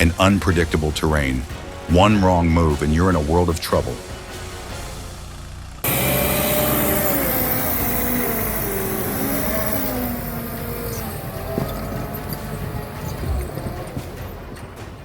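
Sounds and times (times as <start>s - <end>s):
heavy vehicle engine revving: 4.4s - 14.6s.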